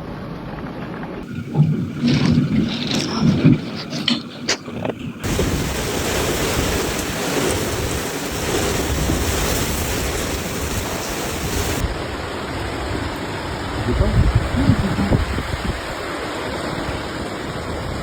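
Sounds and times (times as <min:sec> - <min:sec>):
wind: 0:00.0 - 0:18.0
heavy rain: 0:05.2 - 0:18.0
wind buffeting microphone: 0:05.2 - 0:18.0.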